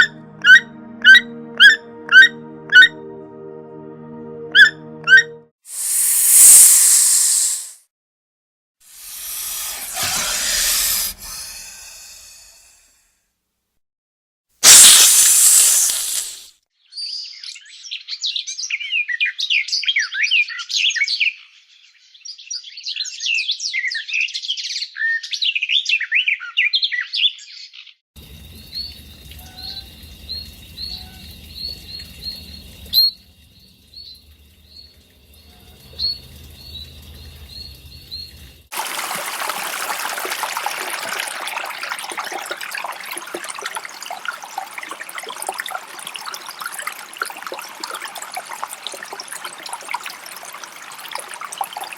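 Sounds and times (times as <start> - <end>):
running water: 5.7 - 7.8, 8.9 - 12.6, 14.6 - 16.5, 28.2 - 51.9
birds chirping: 28.7 - 38.6.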